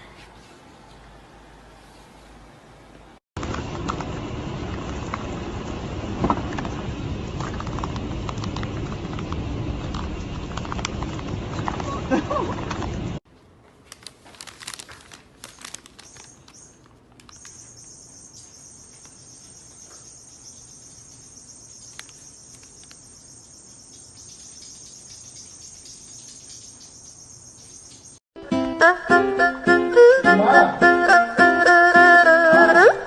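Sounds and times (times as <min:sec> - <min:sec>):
high-pitched insect chirping: 0:17.3 - 0:28.2.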